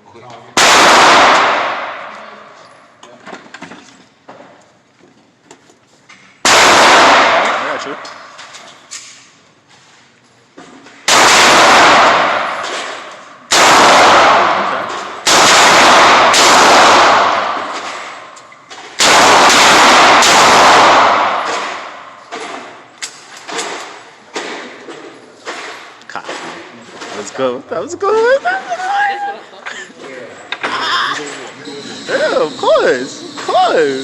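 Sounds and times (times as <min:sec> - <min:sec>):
loud gunshots with echo: 0:00.6 - 0:02.6, 0:06.4 - 0:08.4, 0:11.1 - 0:22.9.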